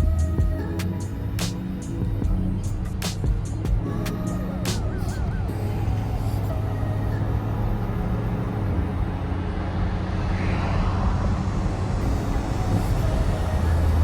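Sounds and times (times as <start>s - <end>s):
truck engine hum: 0.0s - 14.0s
tyre and road noise: 0.0s - 14.0s.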